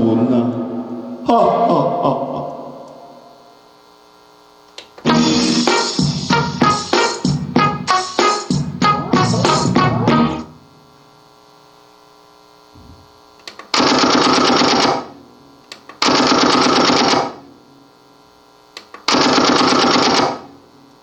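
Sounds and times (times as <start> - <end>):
low hum: 0.0 - 3.8.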